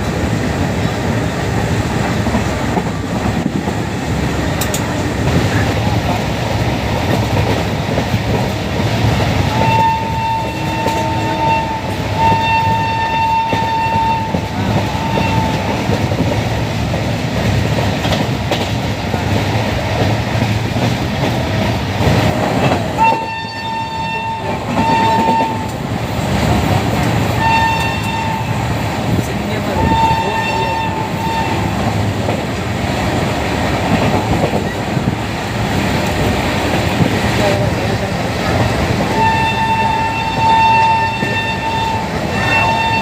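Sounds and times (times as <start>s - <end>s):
train rumble and clickety-clack: 0.0s - 43.0s
shrill electric train horn: 9.4s - 16.0s, 22.9s - 25.8s, 27.3s - 28.8s, 29.5s - 32.0s, 39.0s - 43.0s.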